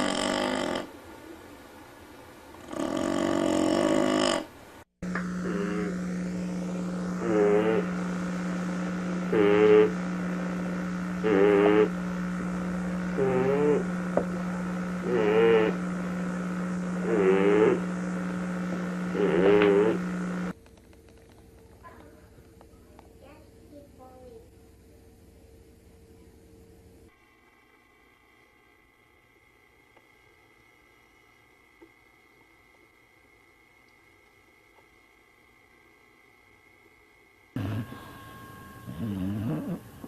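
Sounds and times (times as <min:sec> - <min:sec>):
dog snoring: 0:00.0 - 0:00.9, 0:02.6 - 0:04.5, 0:05.4 - 0:20.5, 0:37.6 - 0:38.1, 0:38.8 - 0:40.0
steady low hum: 0:00.0 - 0:40.0
loud pitched sound: 0:05.0 - 0:20.5.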